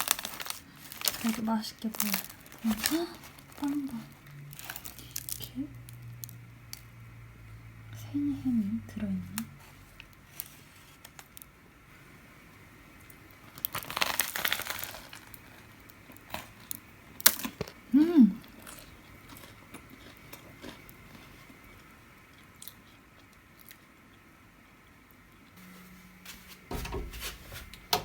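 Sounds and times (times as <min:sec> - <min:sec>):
plastic packaging crinkling: 0:00.0 - 0:06.4, 0:13.4 - 0:17.8
person humming: 0:17.9 - 0:18.4.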